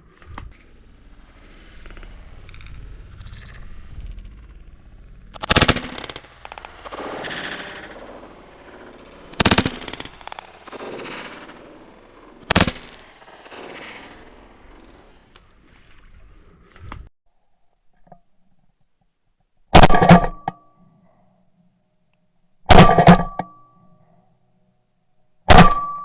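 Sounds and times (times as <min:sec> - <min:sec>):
rolling echo: 0:00.5 - 0:16.7
shotgun shots: 0:05.4 - 0:15.4, 0:19.8 - 0:20.3, 0:22.7 - 0:23.2, 0:25.5 - 0:25.9.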